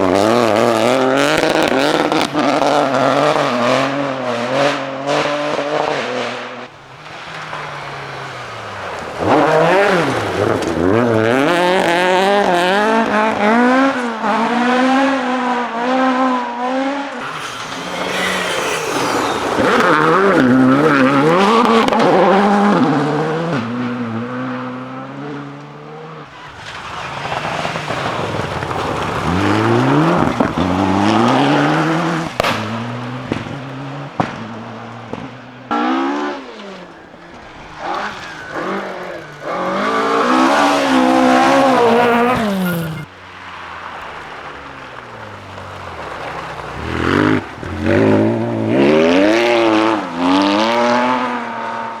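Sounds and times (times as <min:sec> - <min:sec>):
rally car engines revving: 0:00.0 - 0:52.0
sharp cracks: 0:17.2 - 0:22.4, 0:26.3 - 0:47.8.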